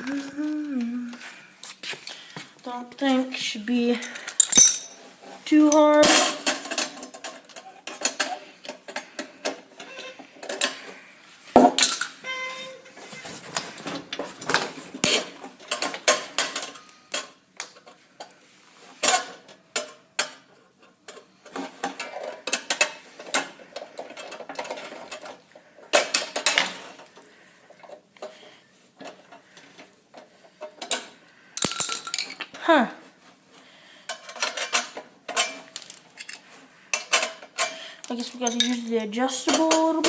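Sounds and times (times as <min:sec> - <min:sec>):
metal tools clanking on bolts: 0:04.0 - 0:05.0, 0:34.1 - 0:40.0.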